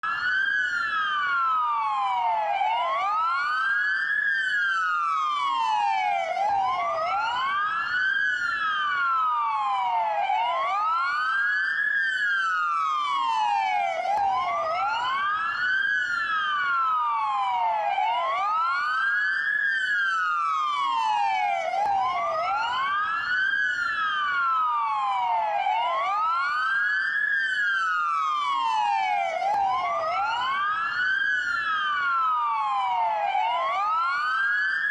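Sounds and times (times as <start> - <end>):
police wail siren: 0.0 - 34.9.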